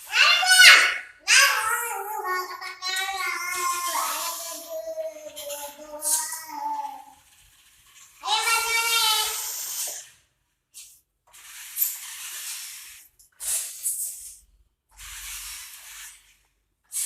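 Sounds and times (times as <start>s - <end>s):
radio-controlled truck hissing: 8.9s - 10.1s, 11.4s - 14.2s.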